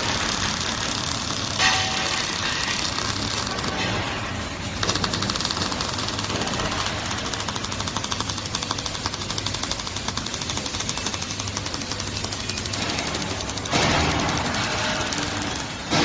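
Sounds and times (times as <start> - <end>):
welding arc crackling: 0.0 - 16.0.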